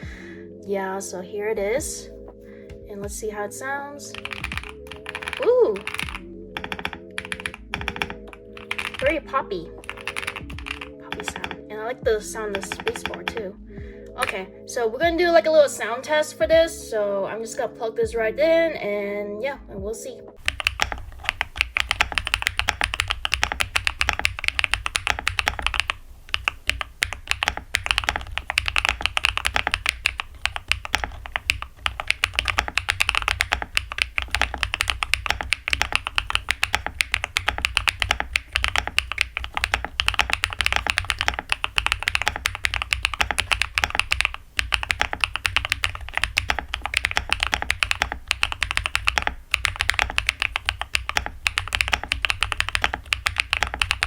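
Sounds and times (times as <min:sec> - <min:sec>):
fast mechanical keyboard typing: 0:04.1 - 0:11.7, 0:12.4 - 0:13.5, 0:14.2 - 0:14.5, 0:20.4 - 0:54.0.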